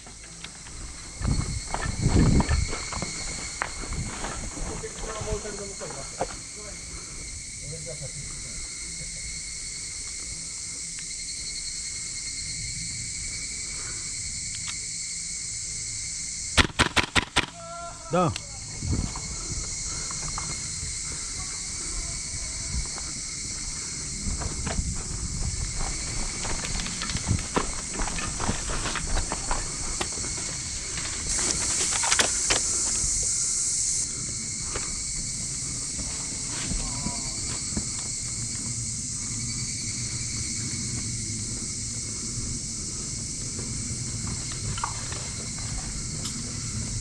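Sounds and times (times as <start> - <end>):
insects shrilling: 0.0 - 47.0
faint ticks: 14.4 - 14.8
clicks and rustles: 25.9 - 32.7.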